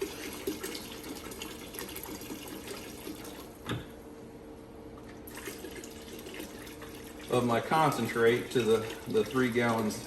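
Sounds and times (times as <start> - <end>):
liquid pouring into water: 0.0 - 3.6, 5.2 - 10.0.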